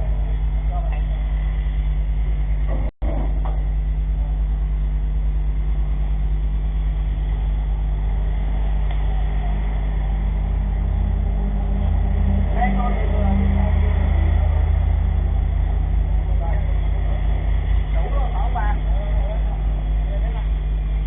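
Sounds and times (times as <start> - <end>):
engine idling: 0.0 - 21.0.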